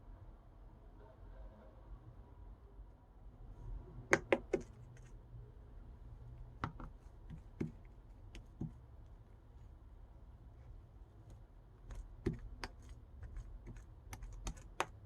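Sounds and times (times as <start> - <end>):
pen tip tapping glass screen: 4.1 - 4.7, 6.6 - 7.8, 8.4 - 8.8, 11.9 - 15.0.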